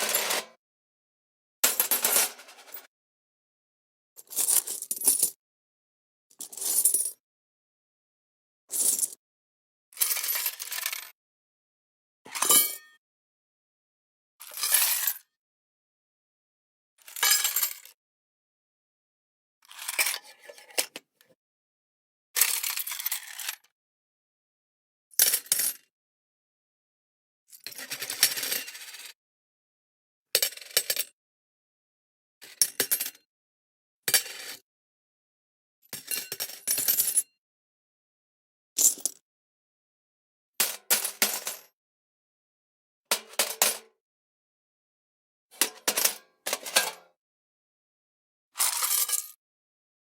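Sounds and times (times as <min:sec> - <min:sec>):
metal coins clinking: 0:00.0 - 0:00.5, 0:01.6 - 0:02.9.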